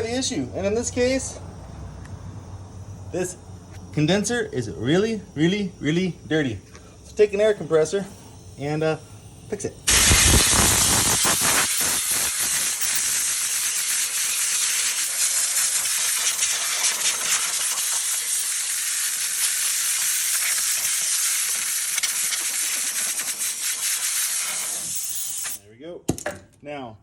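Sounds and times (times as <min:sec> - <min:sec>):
compressed air hissing: 0:06.7 - 0:25.6.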